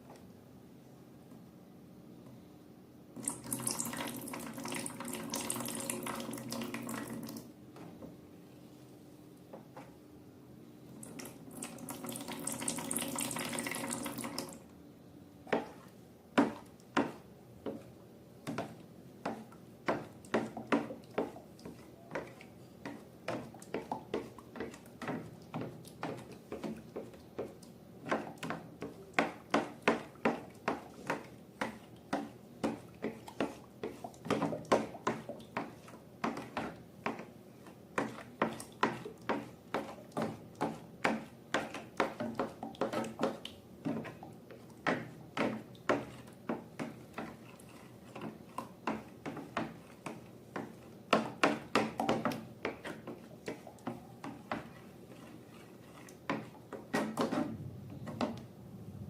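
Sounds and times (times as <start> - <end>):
liquid pouring: 3.2 - 7.5, 11.2 - 14.6.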